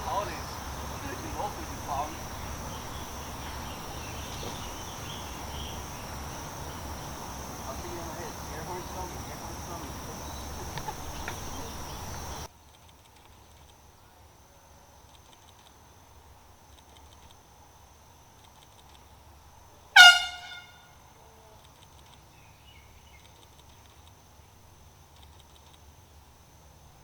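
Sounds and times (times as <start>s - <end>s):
insects chirping: 0.0s - 27.0s
loud air horn blast: 20.0s - 21.0s.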